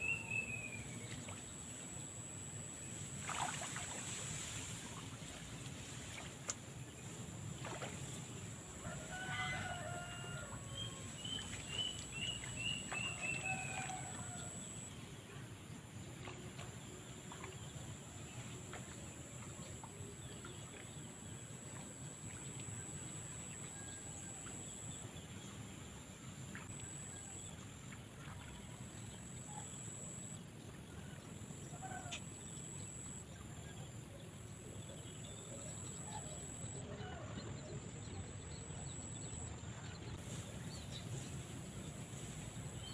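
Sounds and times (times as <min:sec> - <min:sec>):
outdoor background noise: 0:00.0 - 0:42.9
rooster crowing: 0:08.8 - 0:11.1.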